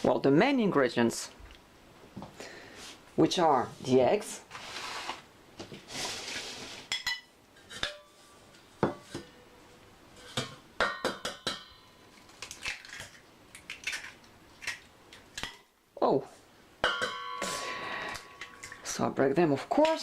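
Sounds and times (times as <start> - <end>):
dish and utensils clinking: 6.9 - 8.2, 16.8 - 18.9.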